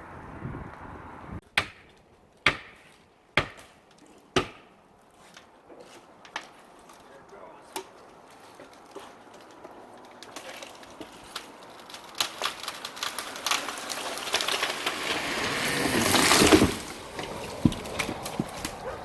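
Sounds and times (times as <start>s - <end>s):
tree trunk cracking: 5.8s - 19.0s
knocks of tree settling: 7.7s - 19.0s.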